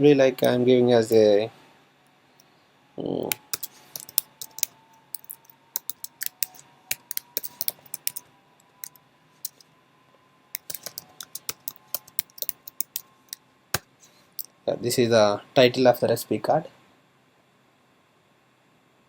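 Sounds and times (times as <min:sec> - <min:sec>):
typing on computer keyboard: 0:03.3 - 0:08.2, 0:10.6 - 0:13.4.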